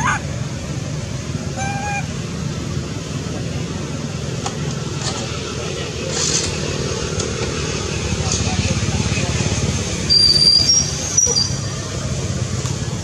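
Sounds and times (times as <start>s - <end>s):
monkey call: 0.0s - 0.3s, 1.5s - 2.2s.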